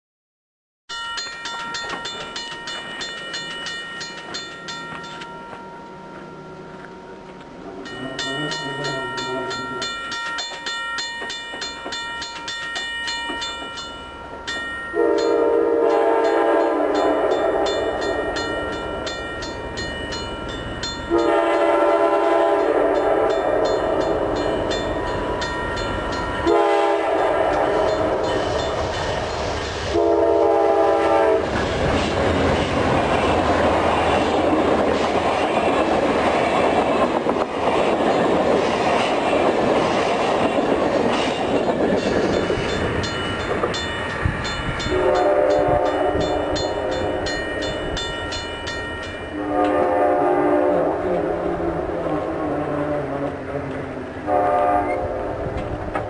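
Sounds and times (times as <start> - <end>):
rapid ringing bell: 0.9 - 6.2, 7.8 - 15.4, 17.0 - 21.2, 23.3 - 26.5, 41.2 - 49.4
train wheels rumbling and clattering: 1.2 - 49.9, 50.9 - 56.0
locomotive air horn blasts: 15.0 - 17.9, 21.1 - 23.7, 26.4 - 28.0, 29.9 - 31.5, 44.8 - 46.9, 49.3 - 51.3, 54.2 - 55.3.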